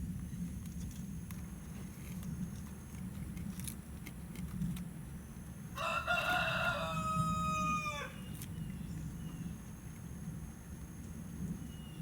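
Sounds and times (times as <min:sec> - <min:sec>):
rooster crowing: 0:05.8 - 0:08.2.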